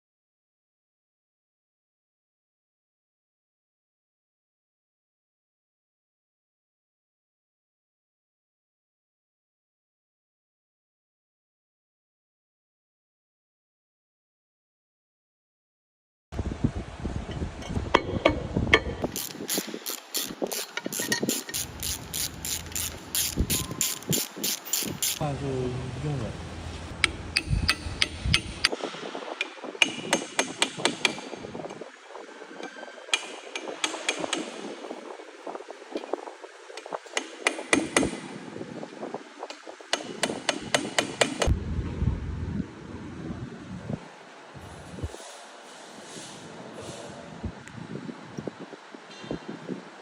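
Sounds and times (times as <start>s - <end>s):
ratchet wrench clicking: 19.0s - 25.2s
low rumble: 41.5s - 44.0s.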